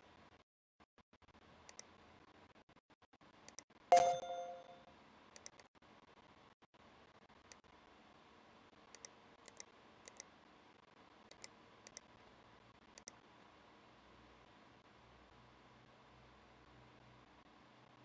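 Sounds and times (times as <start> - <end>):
faint computer mouse clicks: 1.7 - 1.9, 8.9 - 10.3, 11.3 - 12.1, 13.0 - 13.2.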